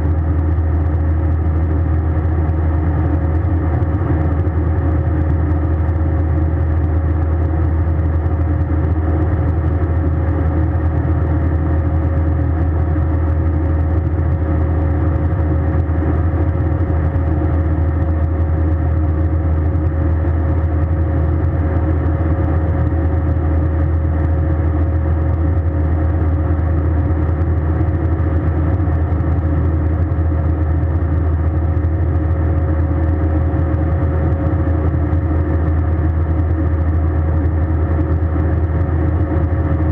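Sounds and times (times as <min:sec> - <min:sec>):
airliner engines and airflow drone: 0:00.0 - 0:39.9
faint steady hum: 0:00.0 - 0:39.9.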